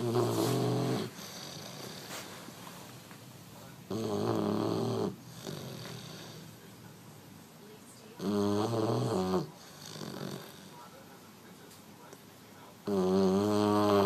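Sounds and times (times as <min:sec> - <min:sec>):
puppy snoring: 0:00.0 - 0:02.6, 0:03.8 - 0:06.7, 0:08.1 - 0:10.9, 0:12.8 - 0:14.0
quiet breathing: 0:00.0 - 0:14.0.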